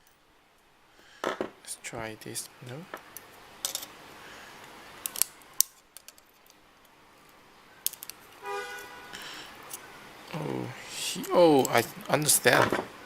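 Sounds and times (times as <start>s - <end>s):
hand tool clicking and snipping plastic: 5.0s - 6.6s.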